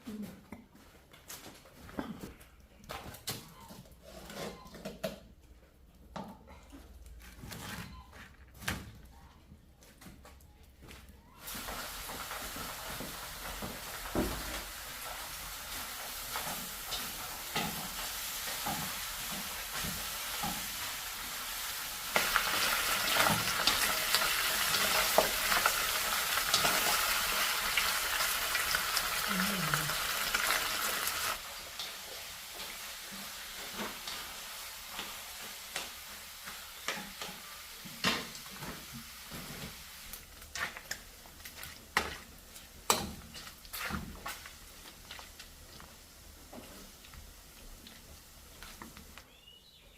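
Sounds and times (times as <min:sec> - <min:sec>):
food sizzling in a pan: 0:11.4 - 0:49.2.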